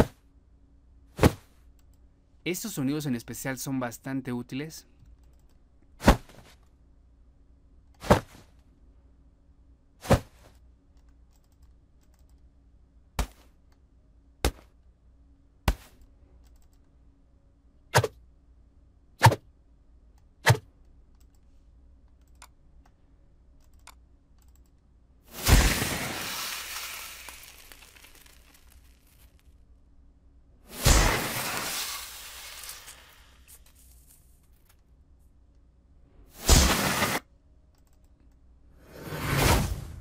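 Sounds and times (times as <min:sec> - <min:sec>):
faint clicks: 0:05.0 - 0:05.6, 0:10.9 - 0:12.5, 0:16.0 - 0:17.0, 0:23.6 - 0:24.9, 0:37.7 - 0:38.4
sharp combat hits: 0:25.3 - 0:27.5, 0:30.7 - 0:32.8, 0:36.4 - 0:37.2.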